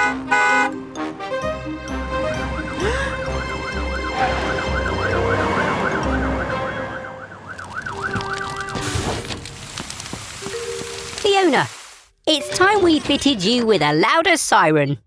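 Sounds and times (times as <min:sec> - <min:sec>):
cartoon fire-truck siren wailing: 0:02.0 - 0:08.8.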